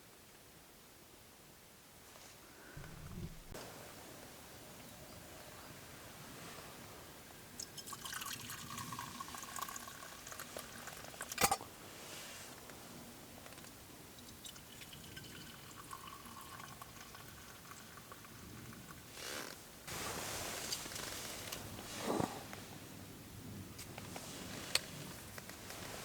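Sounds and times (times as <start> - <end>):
liquid being poured: 7.7 - 11.4, 14.4 - 18.4.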